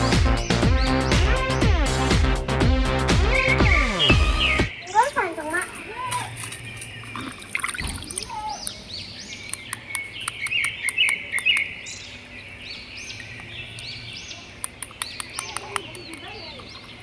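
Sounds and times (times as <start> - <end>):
birds chirping: 0.0 - 17.0
sharp ticks: 14.6 - 17.0.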